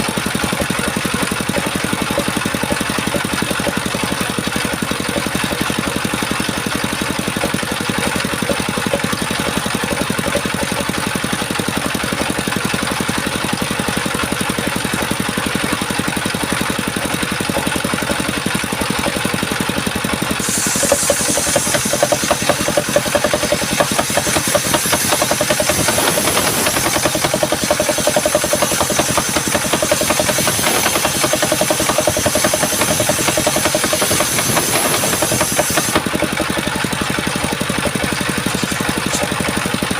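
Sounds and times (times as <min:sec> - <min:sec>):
sawmill engine running: 0:00.0 - 0:39.9
saw blade hissing through wood: 0:20.4 - 0:36.4.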